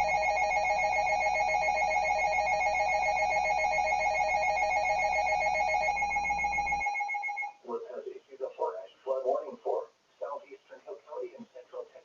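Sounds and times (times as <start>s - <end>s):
two-tone warbling alarm: 0.0s - 7.6s.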